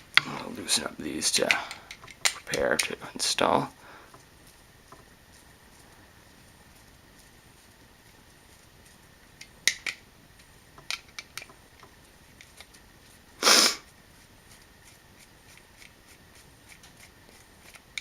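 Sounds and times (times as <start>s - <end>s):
small clicks and taps of tools: 1.4s - 3.0s, 9.4s - 12.8s
short scrape: 13.4s - 13.9s.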